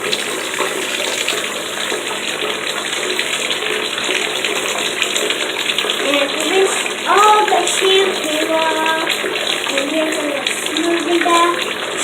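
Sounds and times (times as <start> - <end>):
tap water running into bathtub: 0.0 - 12.0
water splashing: 0.0 - 12.0.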